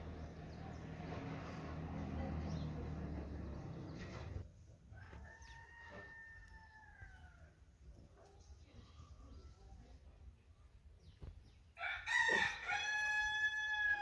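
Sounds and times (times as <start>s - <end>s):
rooster crowing: 5.0s - 7.5s, 11.8s - 14.0s.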